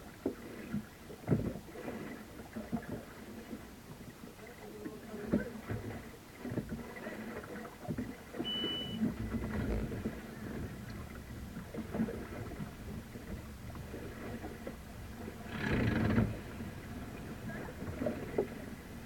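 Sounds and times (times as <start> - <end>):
low rumble of water and wind: 0.0 - 19.0
brief high beep: 8.4 - 9.0.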